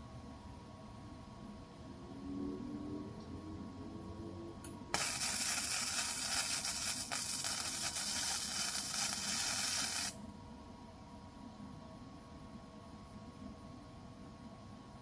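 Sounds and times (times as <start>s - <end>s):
welding arc hissing sizzle: 4.9s - 10.2s.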